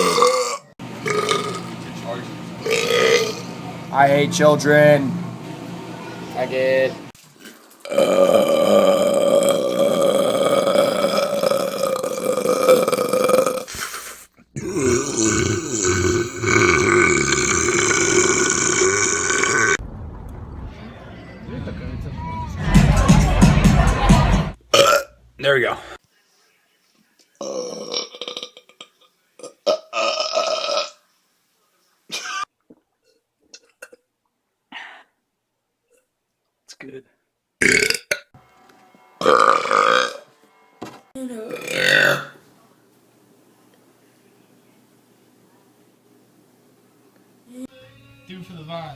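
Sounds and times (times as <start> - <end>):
person burping: 0.0 - 1.7, 2.6 - 3.4, 7.8 - 19.8, 24.7 - 25.1, 27.4 - 31.0, 37.6 - 38.3, 41.4 - 42.4.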